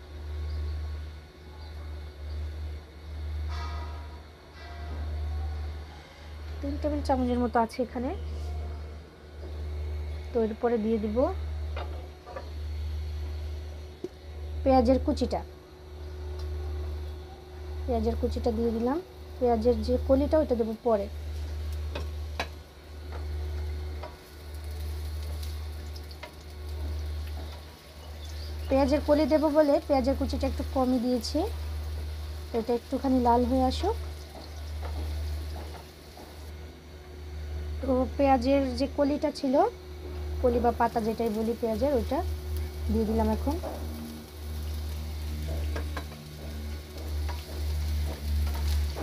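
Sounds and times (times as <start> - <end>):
steady low hum: 0.0 - 49.0
onion sizzling in oil: 16.0 - 49.0.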